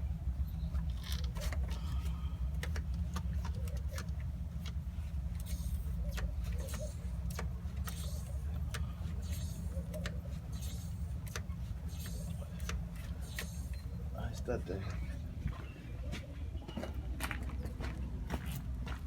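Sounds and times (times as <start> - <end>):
diesel truck engine idling: 0.0 - 19.0.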